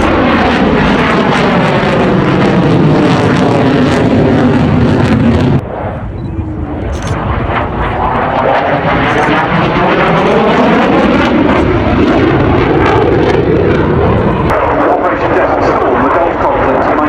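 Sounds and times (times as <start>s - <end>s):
jet roar passing low: 0.0s - 17.0s.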